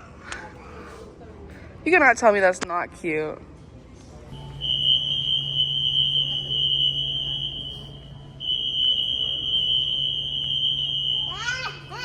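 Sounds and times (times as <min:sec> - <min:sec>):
high-pitched electronic alarm: 0:04.4 - 0:11.7.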